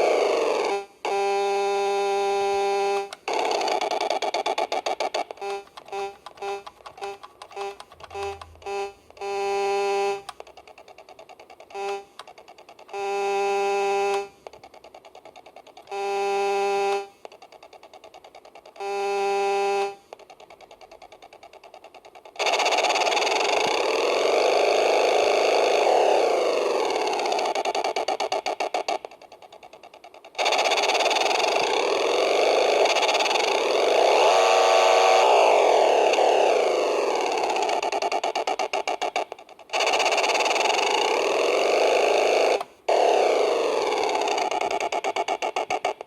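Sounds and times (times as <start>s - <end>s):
buzzy electronic horn tone: 0.6s - 3.1s, 5.4s - 10.3s, 11.7s - 12.1s, 12.9s - 14.3s, 15.9s - 17.1s, 18.8s - 20.0s
rapid electronic putter: 3.0s - 9.6s, 20.2s - 46.0s
electronic engine sound effect: 7.5s - 9.1s, 30.4s - 38.7s.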